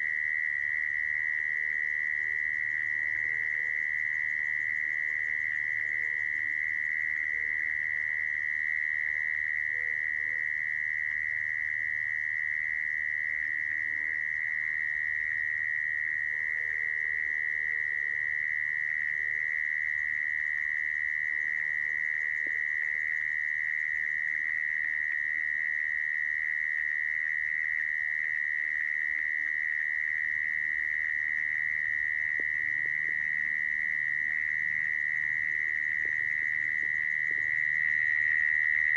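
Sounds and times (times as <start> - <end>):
mole cricket trilling: 0.0 - 38.9.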